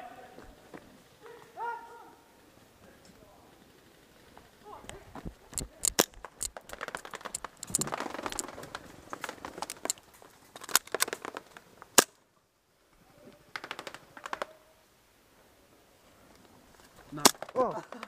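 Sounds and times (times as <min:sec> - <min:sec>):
airsoft guns firing: 0:17.1 - 0:18.0.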